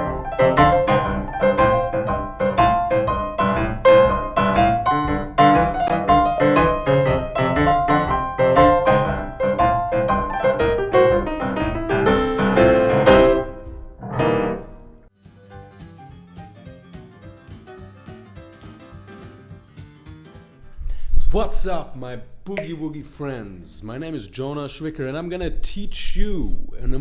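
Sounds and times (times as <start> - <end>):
boogie-woogie blues piano: 0.0 - 15.0.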